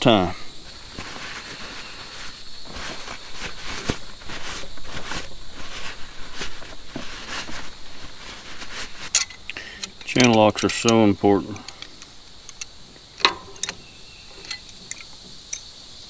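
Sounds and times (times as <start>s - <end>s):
insects droning: 0.0s - 16.0s
tools clicking and knocking on metal: 9.1s - 15.7s.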